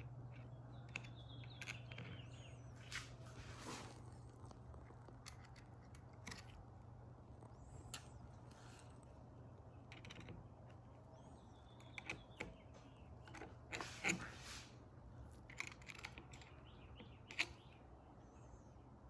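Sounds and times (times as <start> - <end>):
low steady hum: 0.0 - 19.0
metal clicks and taps: 11.8 - 12.6.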